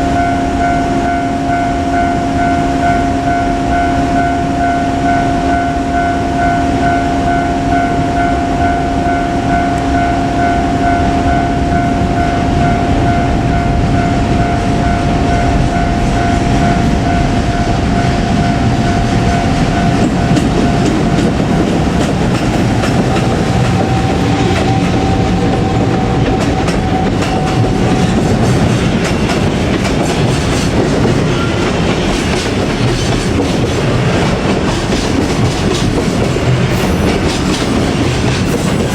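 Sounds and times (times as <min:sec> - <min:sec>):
level-crossing alarm ringing: 0:00.0 - 0:33.3, 0:36.6 - 0:38.9
train wheels clattering over rail joints: 0:19.2 - 0:38.9.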